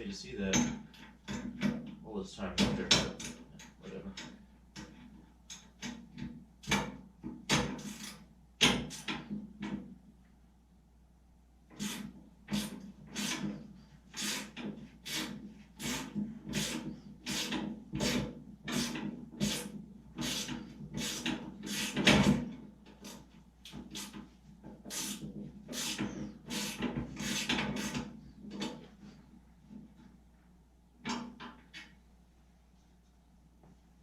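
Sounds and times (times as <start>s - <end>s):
hand saw rasping on metal: 11.8s - 22.4s, 24.8s - 28.1s.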